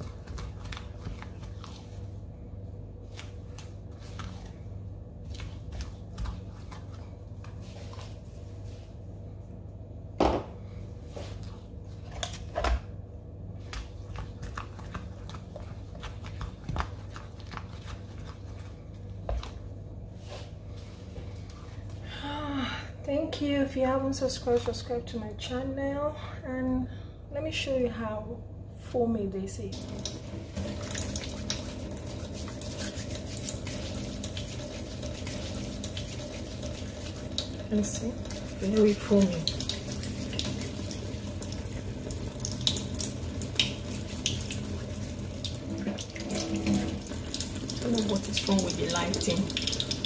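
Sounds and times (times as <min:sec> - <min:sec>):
wet foaming scrub squishing: 0:00.0 - 0:02.2, 0:13.6 - 0:19.6, 0:29.8 - 0:50.0
steady low hum: 0:00.0 - 0:50.0.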